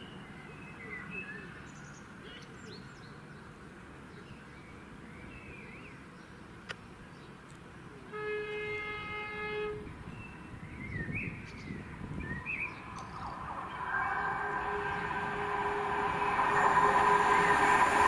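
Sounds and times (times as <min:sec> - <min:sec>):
train horn: 0:08.1 - 0:10.0, 0:12.7 - 0:18.0
approaching train running: 0:09.9 - 0:18.0
birds chirping: 0:10.1 - 0:18.0.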